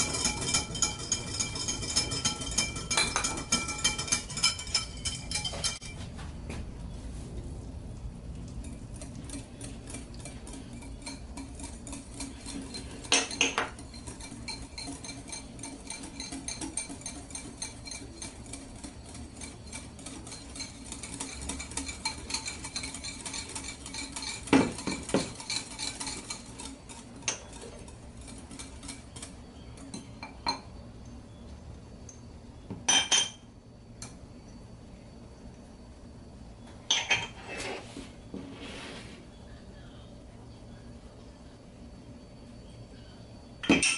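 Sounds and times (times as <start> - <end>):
clinks and knocks: 0.0 - 6.0, 10.8 - 17.8, 36.9 - 37.4.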